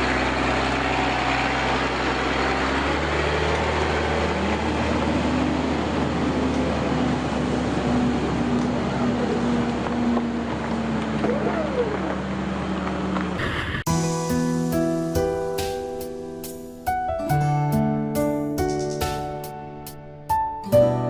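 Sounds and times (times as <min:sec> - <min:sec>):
heavy vehicle engine running: 0:00.0 - 0:15.0.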